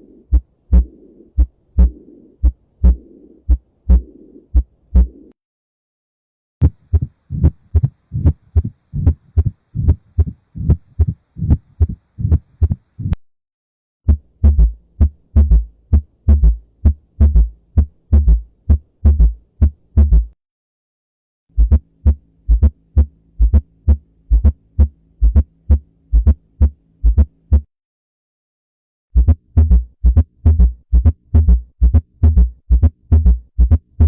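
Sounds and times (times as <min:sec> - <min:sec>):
low rumbling heart murmur: 0:00.3 - 0:05.2, 0:06.6 - 0:13.2, 0:14.1 - 0:20.4, 0:21.6 - 0:27.7, 0:29.2 - 0:34.0
heartbeat through stethoscope: 0:00.3 - 0:05.3, 0:06.6 - 0:13.2, 0:14.1 - 0:20.4, 0:21.6 - 0:27.7, 0:29.2 - 0:34.0
low steady hum: 0:06.6 - 0:13.2.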